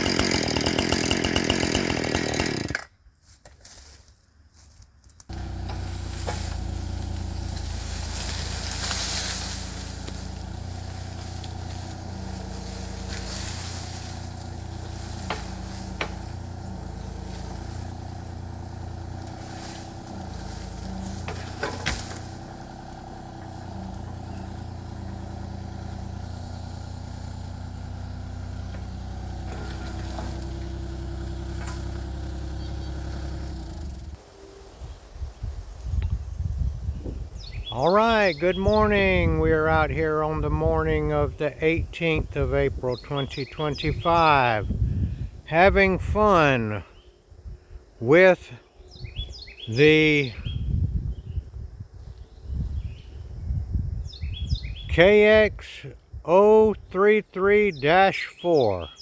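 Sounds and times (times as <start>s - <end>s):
excavator diesel engine running: 0.0s - 2.8s, 5.3s - 34.2s, 37.8s - 44.7s
sharp knocks and cracks: 12.6s - 16.4s, 20.1s - 22.4s.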